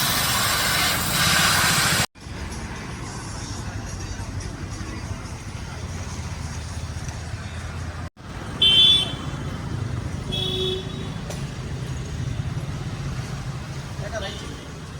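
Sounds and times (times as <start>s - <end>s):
car horn beeps: 8.6s - 9.3s, 10.3s - 11.2s.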